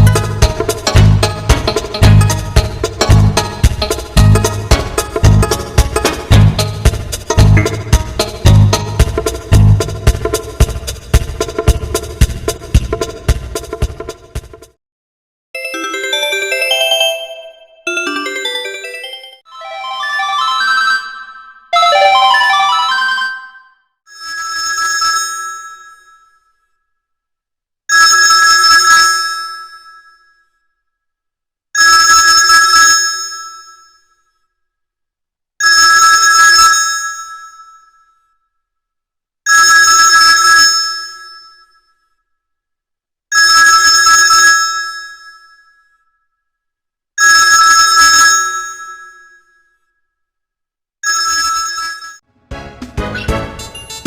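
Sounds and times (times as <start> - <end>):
mobile phone ringtone: 15.6 - 26.4, 43.4 - 46.0, 47.2 - 49.8, 51.0 - 52.3.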